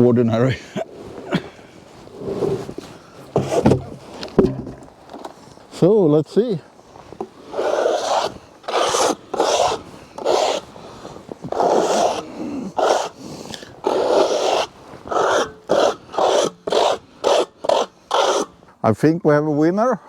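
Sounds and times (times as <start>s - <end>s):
brush sweeping sawdust off wood: 1.9s - 4.3s, 6.9s - 18.6s.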